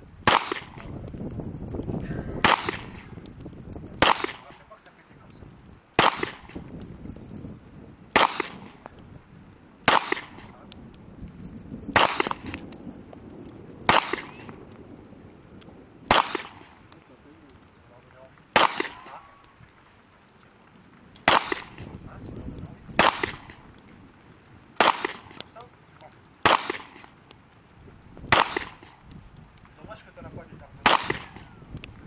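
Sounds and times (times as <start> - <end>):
pistol shots with echo: 0.2 - 0.9, 2.4 - 3.2, 4.0 - 4.7, 6.0 - 6.6, 8.2 - 8.8, 9.8 - 10.6, 11.9 - 12.6, 13.9 - 14.6, 16.1 - 16.8, 18.5 - 19.4, 21.2 - 21.9, 23.0 - 23.6, 24.8 - 25.6, 26.4 - 27.1, 28.3 - 29.0, 30.8 - 31.5.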